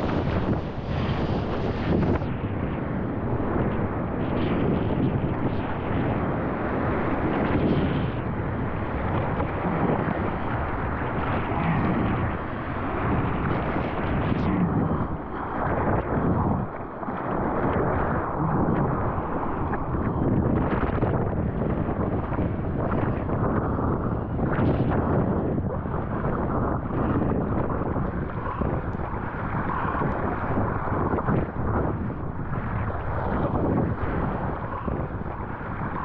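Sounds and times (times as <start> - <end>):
wind gusts buffeting microphone: 0.0 - 36.0.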